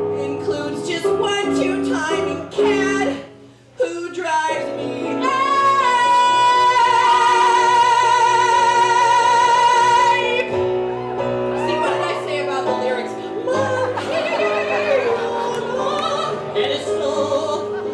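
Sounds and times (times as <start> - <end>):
person singing: 12.8 - 17.9.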